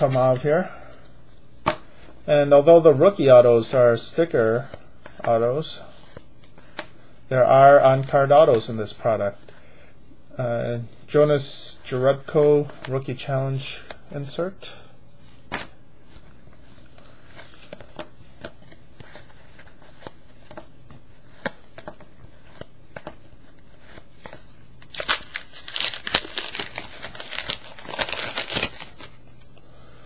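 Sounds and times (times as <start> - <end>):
card pack wrapper tearing: 24.8 - 29.1.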